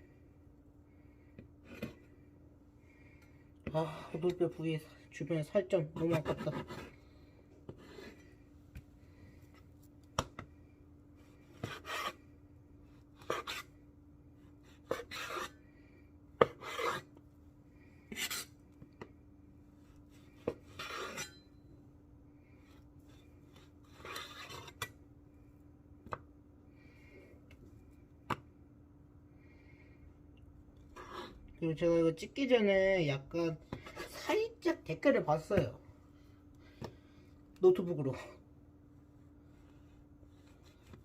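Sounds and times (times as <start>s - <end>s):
knife rasping through meat: 13.2s - 13.7s, 14.7s - 15.6s, 16.4s - 17.1s, 18.1s - 18.6s.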